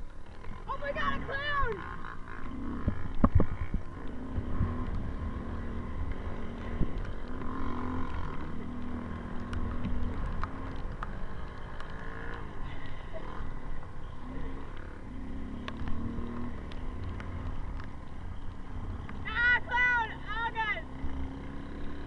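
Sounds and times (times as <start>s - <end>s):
atv engine running: 0.0s - 22.0s.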